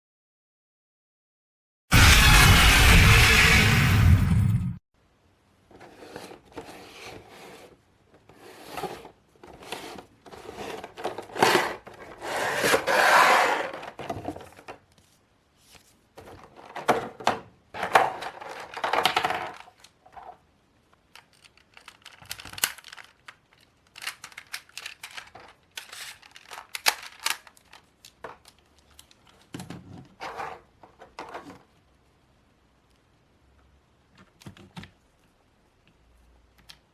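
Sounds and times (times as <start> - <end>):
clicks and knocks of toy: 21.0 - 30.0
packaging rustling and tearing: 21.2 - 29.5.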